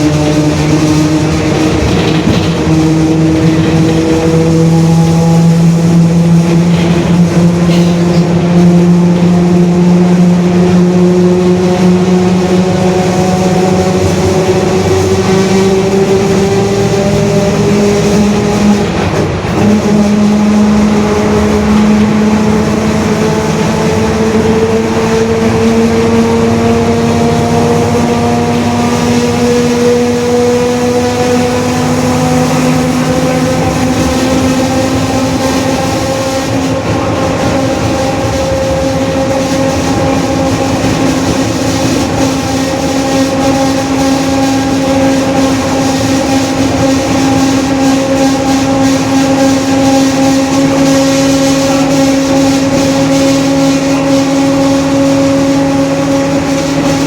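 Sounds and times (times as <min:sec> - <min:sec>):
bus tonal whine rising in pitch: 0:00.0 - 0:57.0.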